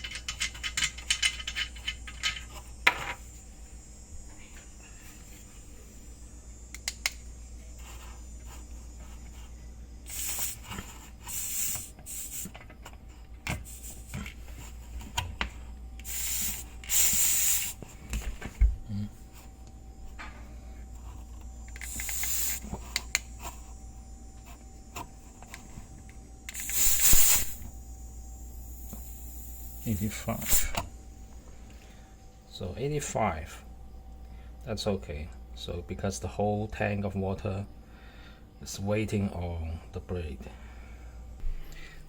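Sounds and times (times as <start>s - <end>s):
clicks and knocks from handling parts: 0.0s - 3.2s
low steady hum: 0.0s - 42.0s
pressurized fitting hissing: 7.8s - 12.6s, 13.5s - 14.2s, 16.0s - 18.0s, 21.8s - 23.7s, 26.5s - 30.9s.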